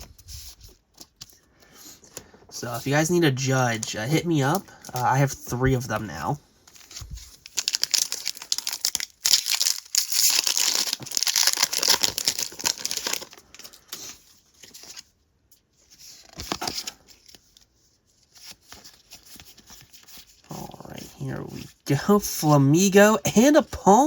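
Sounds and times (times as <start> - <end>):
cards rustling and tapping: 0.0 - 15.1, 15.9 - 20.5
foil wrapper tearing and crinkling: 6.7 - 14.1.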